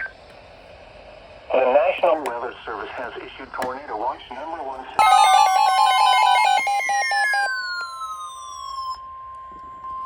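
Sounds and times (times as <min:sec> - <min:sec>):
siren-like falling tone: 0:05.0 - 0:10.0.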